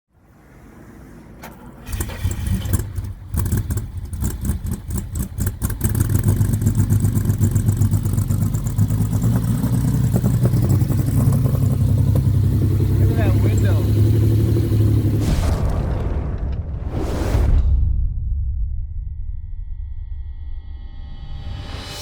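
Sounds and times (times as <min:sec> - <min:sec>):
car engine starting and idling: 0:00.5 - 0:15.9.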